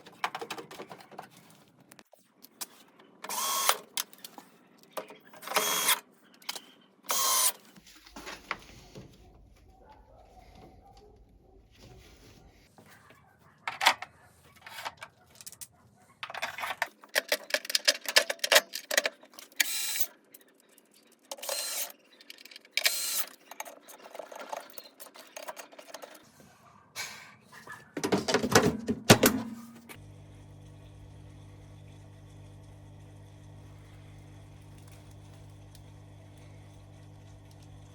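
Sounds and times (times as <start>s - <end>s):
clattering of tools being handled: 0.0s - 1.6s, 13.7s - 19.6s.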